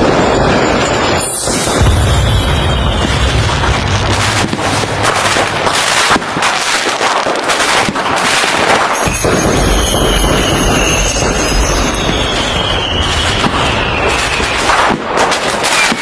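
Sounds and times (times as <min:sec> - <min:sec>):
fireworks crackling and popping: 0:00.0 - 0:16.0
low rumble: 0:01.6 - 0:06.8
thin high whine: 0:09.0 - 0:14.4.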